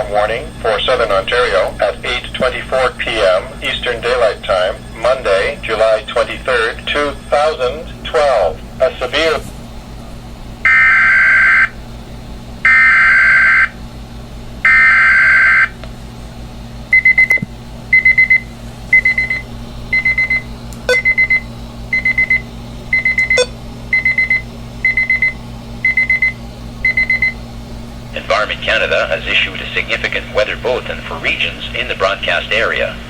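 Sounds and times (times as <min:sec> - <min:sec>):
alert receiver beeping: 0:20.0 - 0:21.4, 0:23.0 - 0:27.4.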